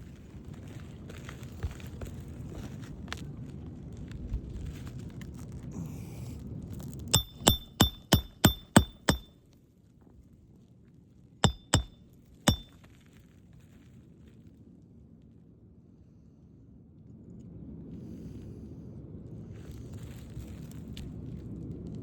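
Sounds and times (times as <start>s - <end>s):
hammer driving nail: 7.2s - 9.3s, 11.4s - 11.9s.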